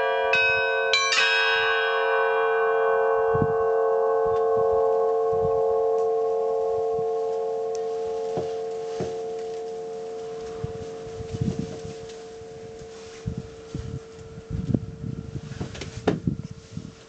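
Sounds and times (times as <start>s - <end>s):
church bells ringing: 0.0s - 15.4s
dull low thumps: 8.2s - 17.0s.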